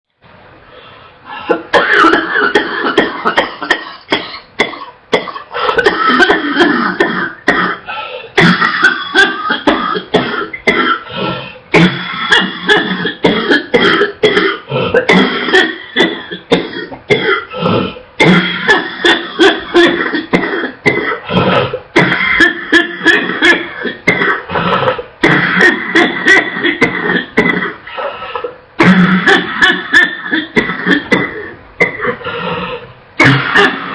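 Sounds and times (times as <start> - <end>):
woman coughing: 1.5 - 11.2, 11.8 - 32.2, 33.2 - 33.9.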